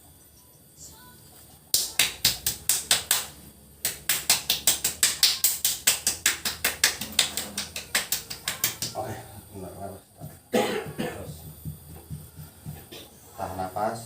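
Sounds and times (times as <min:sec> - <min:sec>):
rapid sharp taps: 0:01.7 - 0:09.0, 0:10.9 - 0:13.0.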